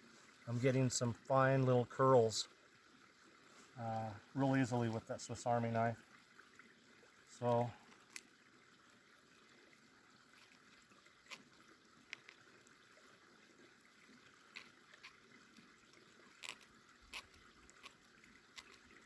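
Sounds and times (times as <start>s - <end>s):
faint hiss: 3.4s - 6.0s
knife shaving wood: 16.3s - 19.0s.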